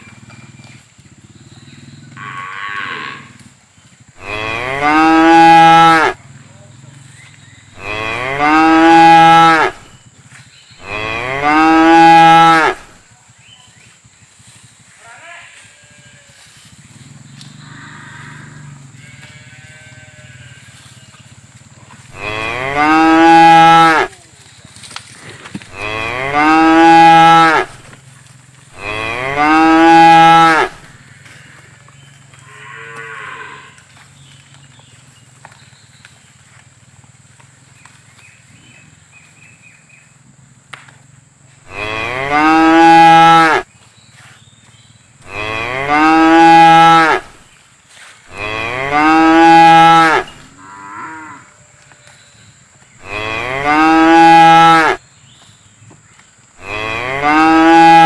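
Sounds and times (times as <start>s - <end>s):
cows mooing: 0.0s - 3.5s, 4.1s - 9.9s, 10.8s - 13.0s, 14.9s - 24.2s, 24.8s - 28.0s, 28.7s - 34.2s, 41.6s - 43.6s, 45.2s - 47.4s, 48.3s - 52.1s, 53.0s - 55.0s, 56.6s - 58.0s.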